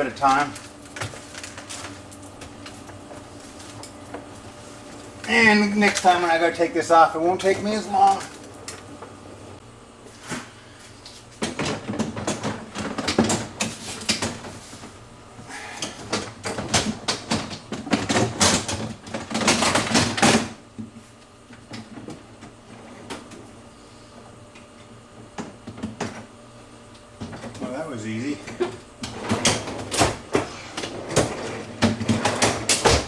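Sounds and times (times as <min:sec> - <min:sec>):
freezer drawer parts clattering: 0:00.0 - 0:03.0, 0:11.4 - 0:14.6, 0:15.8 - 0:20.6, 0:28.5 - 0:33.0.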